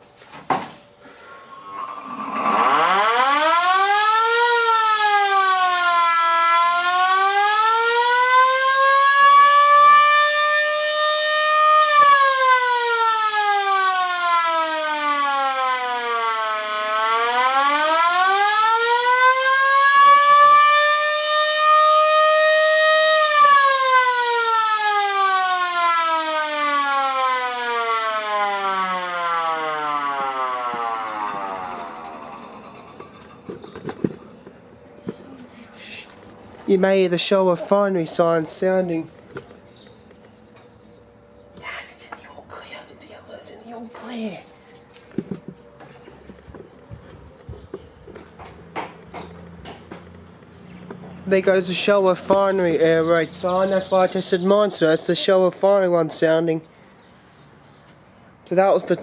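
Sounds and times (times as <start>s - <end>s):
air raid siren wailing: 1.0s - 41.5s, 43.9s - 56.9s.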